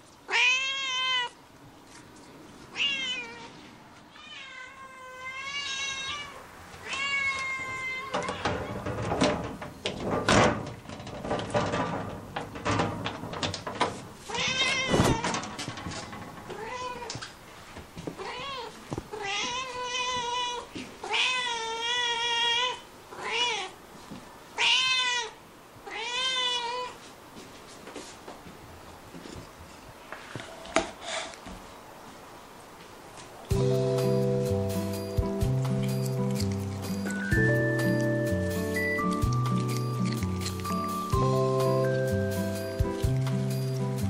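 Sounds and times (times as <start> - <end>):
cat meowing: 0.3 - 1.4, 2.7 - 8.8, 14.3 - 15.3, 16.5 - 17.2, 18.2 - 23.8, 24.6 - 27.0
cat crunching grass: 33.2 - 44.0.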